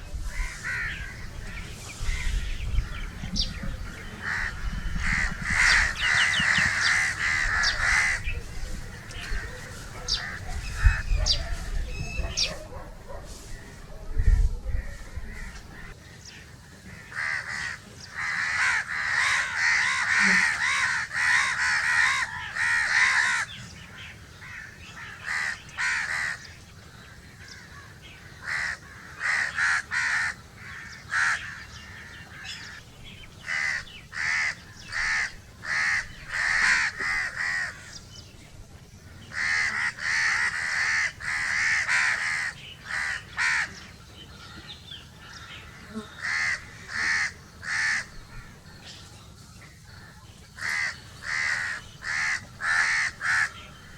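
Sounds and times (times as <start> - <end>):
crows cawing: 0.3 - 3.1, 3.9 - 11.8, 14.8 - 32.8, 33.4 - 38.0, 39.2 - 43.8, 45.2 - 48.6, 50.0 - 53.9.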